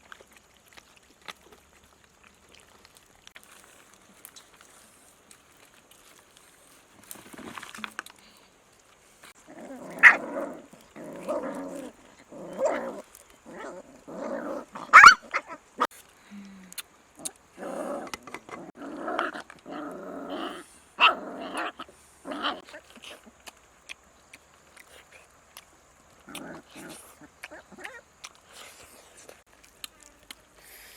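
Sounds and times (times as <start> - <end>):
dog growling: 9.4 - 15.9, 17.2 - 23.2, 26.2 - 28.0
dog yelping: 9.9 - 10.3, 14.8 - 15.7.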